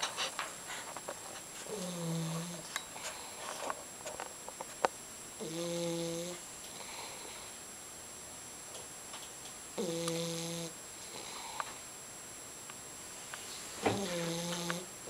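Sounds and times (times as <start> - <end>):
pet snoring: 1.7 - 3.4, 5.4 - 7.6, 9.8 - 11.8, 13.8 - 14.9.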